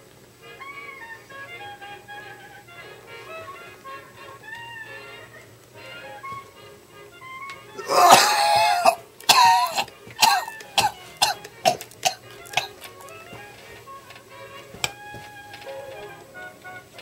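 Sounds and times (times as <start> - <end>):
faint background music: 0.0 - 17.0
man coughing heavily: 7.8 - 12.7.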